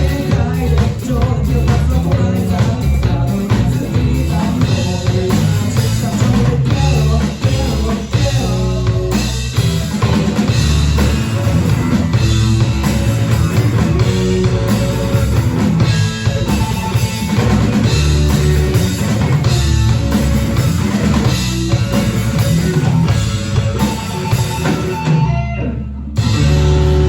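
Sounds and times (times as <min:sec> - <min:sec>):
bass guitar: 0:00.0 - 0:27.0
drum kit: 0:00.0 - 0:27.0
electric guitar: 0:00.0 - 0:27.0.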